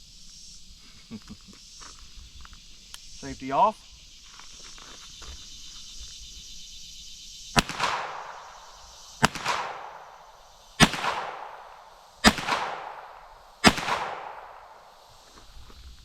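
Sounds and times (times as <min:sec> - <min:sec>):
pistol shots with echo: 0:07.6 - 0:15.1.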